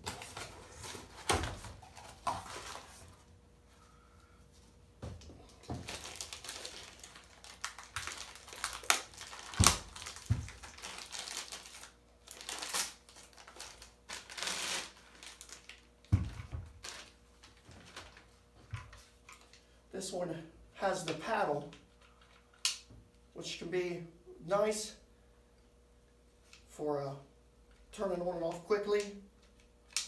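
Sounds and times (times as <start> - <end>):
plastic packaging crinkling: 5.5 - 15.9, 16.7 - 18.4.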